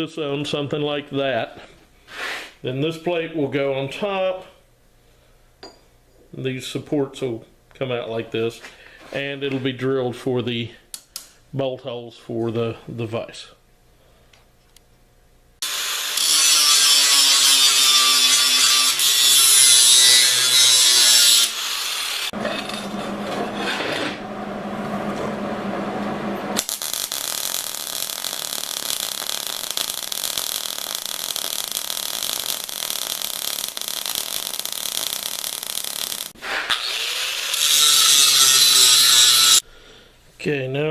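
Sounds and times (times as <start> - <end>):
angle grinder grinding steel: 15.6 - 24.3, 26.6 - 39.6.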